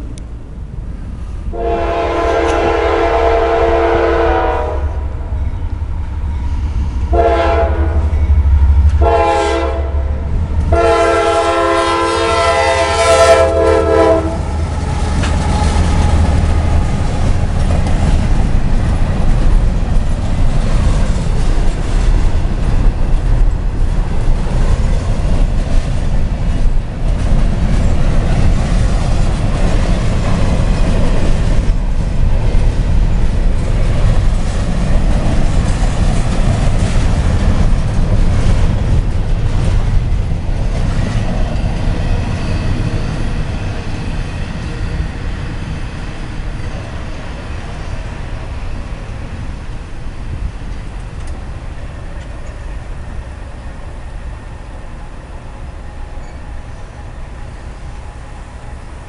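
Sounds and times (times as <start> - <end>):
freight train rolling past: 0.0 - 59.0
wheels clattering over rail joints: 14.4 - 45.1.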